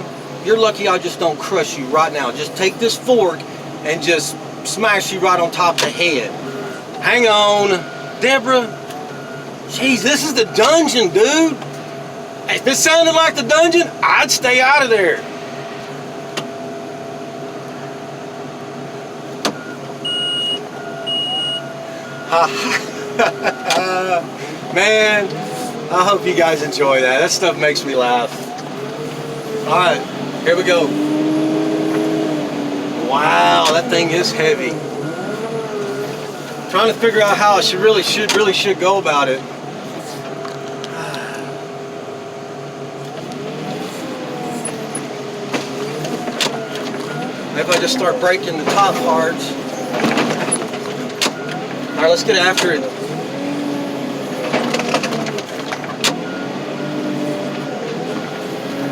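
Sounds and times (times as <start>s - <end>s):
engine idling hum: 0.0s - 58.9s
high electronic beeps: 19.6s - 22.4s.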